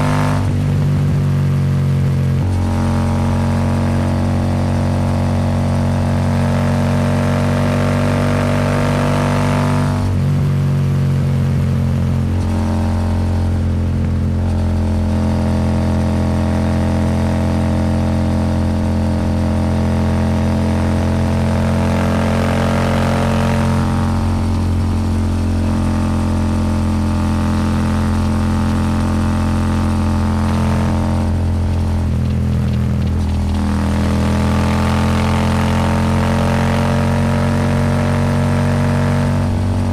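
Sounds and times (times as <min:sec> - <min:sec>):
motorcycle engine cruising: 0:00.0 - 0:39.9
wind noise: 0:29.8 - 0:35.7.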